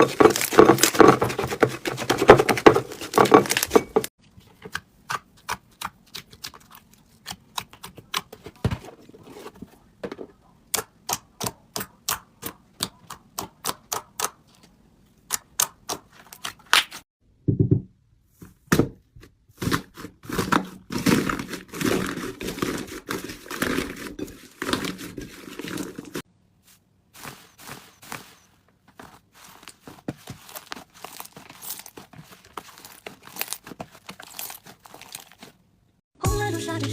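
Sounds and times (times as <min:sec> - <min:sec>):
slime popping and squishing: 0:30.4 - 0:35.5.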